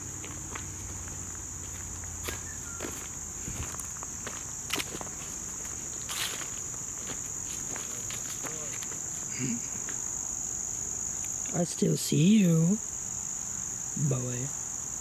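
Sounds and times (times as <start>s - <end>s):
footsteps: 0.0s - 10.0s
insect chorus droning: 0.0s - 15.0s.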